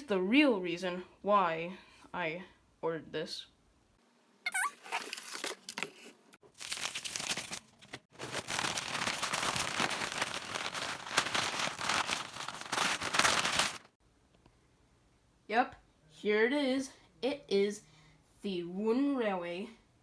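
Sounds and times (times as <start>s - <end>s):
packing material rustling: 4.8s - 14.0s.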